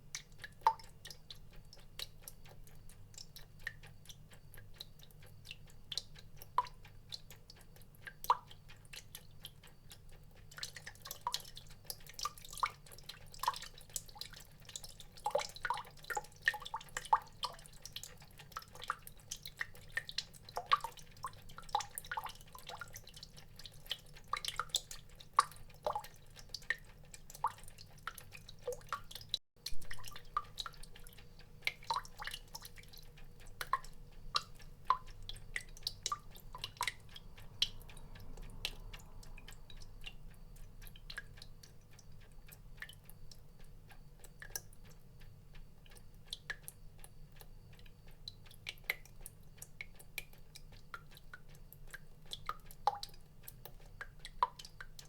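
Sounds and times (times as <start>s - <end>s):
water drops plinking: 29.6s - 30.8s.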